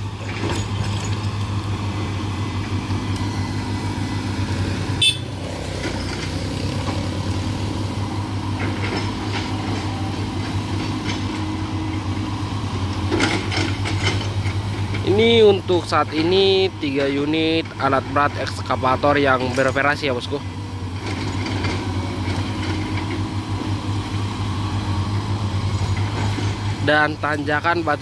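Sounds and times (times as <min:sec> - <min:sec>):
diesel excavator engines running: 0:00.0 - 0:28.0.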